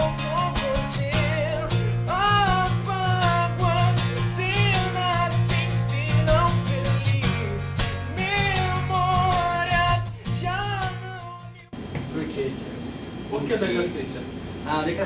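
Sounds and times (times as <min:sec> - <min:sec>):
pop-rock song with singing: 0:00.0 - 0:11.7.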